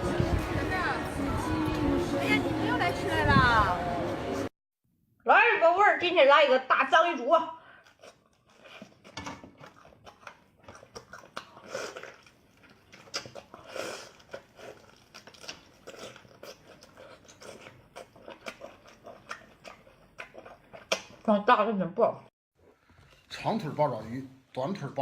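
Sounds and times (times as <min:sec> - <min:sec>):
wet chewing and mouth smacks: 0:07.8 - 0:21.3.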